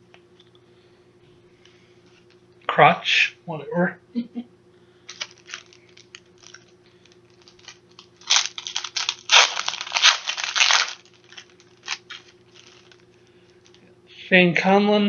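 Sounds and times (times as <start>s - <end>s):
wrapper tearing and crinkling: 5.1s - 13.8s.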